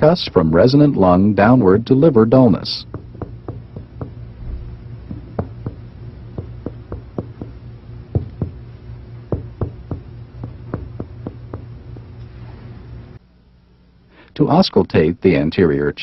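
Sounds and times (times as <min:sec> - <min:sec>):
finger tapping on chest: 0:02.9 - 0:04.2, 0:05.1 - 0:05.8, 0:06.4 - 0:07.6, 0:08.2 - 0:08.6, 0:09.3 - 0:11.7.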